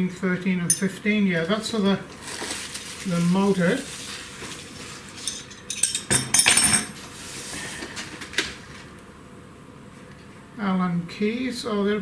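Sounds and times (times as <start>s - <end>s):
metal hand tools clinking: 0.7s - 1.0s, 5.2s - 7.0s.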